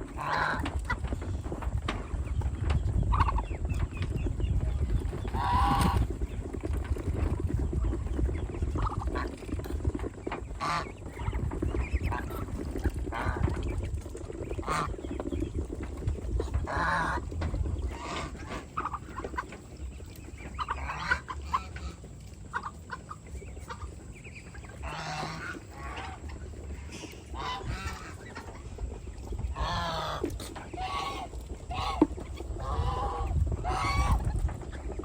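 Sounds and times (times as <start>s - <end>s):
geese honking: 0.0s - 1.2s, 5.2s - 6.2s, 10.4s - 11.3s, 14.4s - 35.0s
farm fowl calling: 0.0s - 2.1s, 5.2s - 6.2s, 10.5s - 11.4s, 14.6s - 15.4s, 16.4s - 34.7s
low steady rumble: 0.0s - 35.0s.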